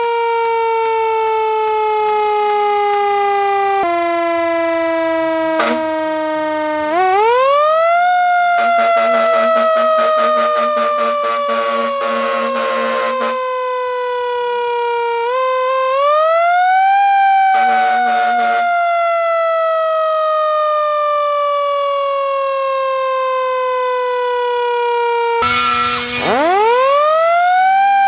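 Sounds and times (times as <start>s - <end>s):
second siren winding up: 0.0s - 28.0s
siren wailing: 0.0s - 28.0s
air horn blast: 5.5s - 6.0s, 8.5s - 13.5s, 17.6s - 18.8s, 25.4s - 26.5s.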